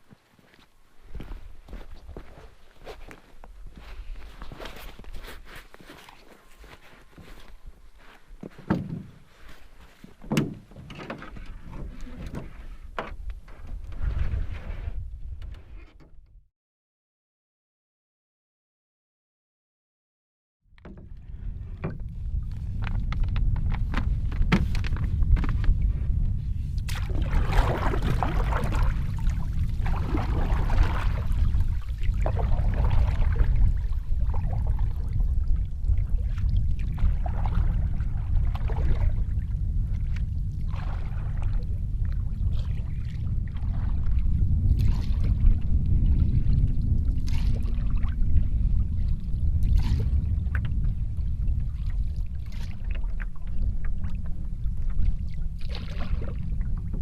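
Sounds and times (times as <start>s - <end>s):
wind rumbling on microphone: 0.0s - 16.5s, 20.7s - 57.0s
paddle splashing in water: 4.0s - 7.4s, 26.8s - 41.7s, 42.4s - 46.4s, 47.1s - 48.3s, 49.0s - 50.9s, 51.6s - 57.0s.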